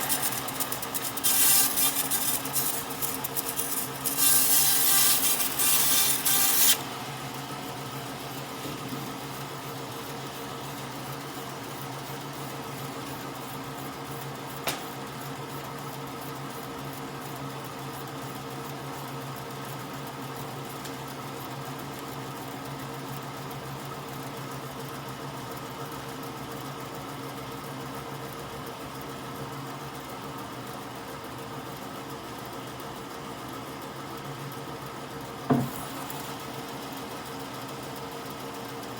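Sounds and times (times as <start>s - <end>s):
tool rasping on wood: 0.0s - 6.8s
small motor humming: 0.0s - 10.2s
sharp click: 14.6s - 15.0s.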